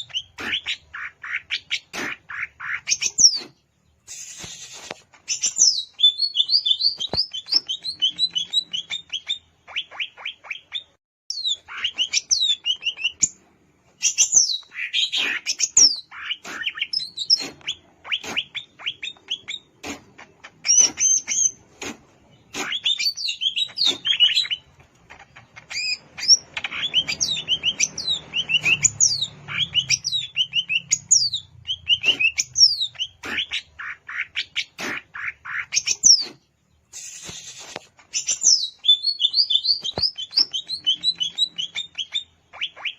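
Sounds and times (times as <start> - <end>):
bird singing: 22.3 - 24.7, 25.4 - 34.8, 38.1 - 42.9.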